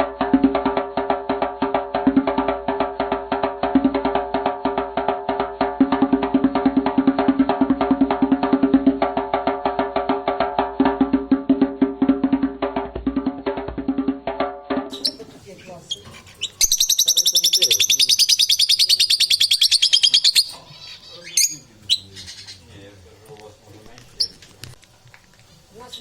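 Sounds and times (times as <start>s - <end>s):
birds crunching with beaks: 19.8s - 25.7s.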